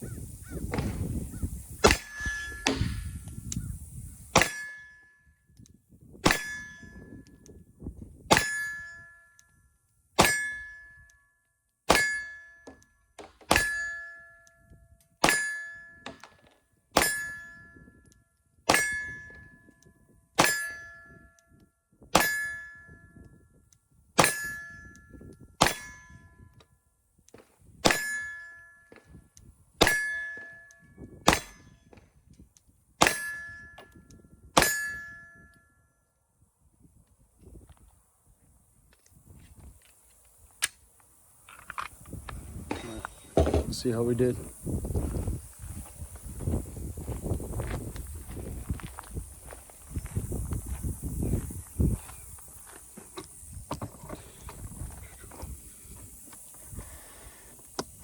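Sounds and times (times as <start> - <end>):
pistol shots: 1.8 - 3.1, 13.5 - 13.8, 25.6 - 25.9, 31.2 - 31.8
short metallic ring: 1.9 - 3.2, 6.3 - 7.2, 8.3 - 16.4, 17.0 - 21.6, 22.2 - 23.6, 24.2 - 26.6, 27.8 - 32.0, 33.0 - 36.1.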